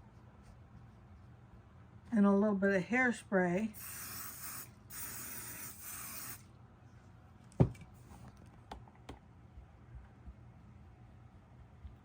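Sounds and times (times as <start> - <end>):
aerosol can hissing: 3.8 - 6.4.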